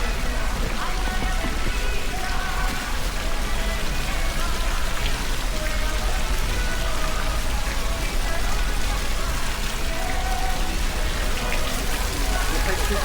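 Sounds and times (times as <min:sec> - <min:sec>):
faint music: 0:00.0 - 0:13.0
distant voices: 0:11.2 - 0:13.0.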